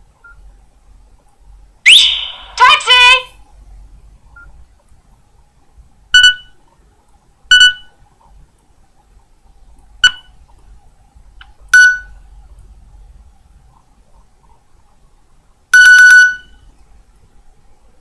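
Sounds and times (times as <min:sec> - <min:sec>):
phone speaker high beeps: 0:01.9 - 0:03.3, 0:15.8 - 0:16.5.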